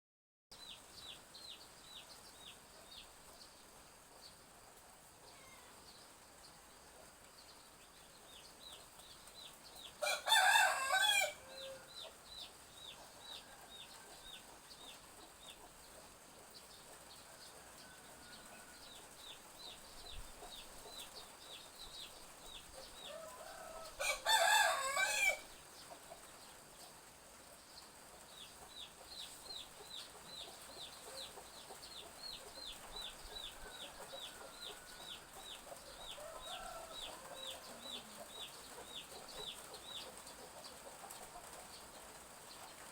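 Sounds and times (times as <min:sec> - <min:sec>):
rooster crowing: 0:10.0 - 0:12.0, 0:17.3 - 0:19.0, 0:23.1 - 0:25.5, 0:33.5 - 0:38.2
chicks peeping: 0:28.2 - 0:42.8.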